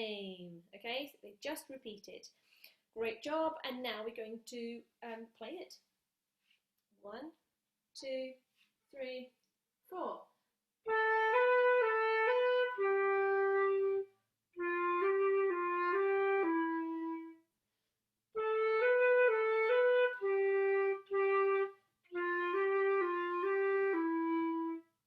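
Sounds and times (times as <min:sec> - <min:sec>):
solo flute melody: 0:10.9 - 0:17.5, 0:18.3 - 0:25.0.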